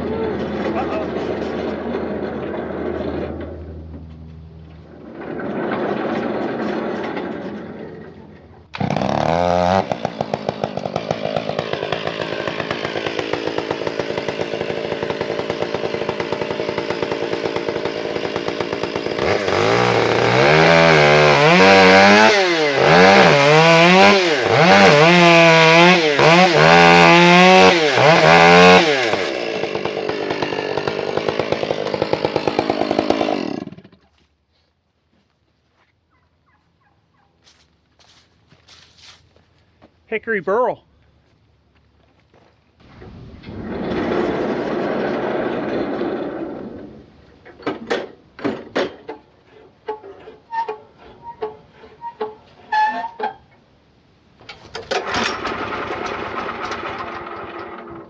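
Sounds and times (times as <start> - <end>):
chainsaw running and revving: 0.0 - 3.4, 5.0 - 8.1, 8.7 - 34.1, 43.5 - 47.0, 55.0 - 58.0.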